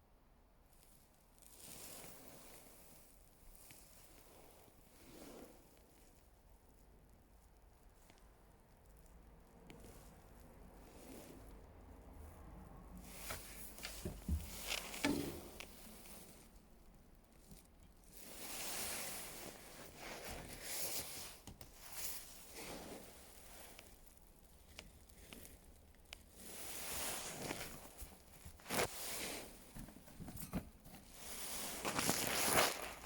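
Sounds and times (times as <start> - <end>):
rabbit munching leaves: 12.9 - 29.6, 31.1 - 33.0
leaf rustling: 13.0 - 16.6, 26.3 - 29.7, 31.0 - 33.0.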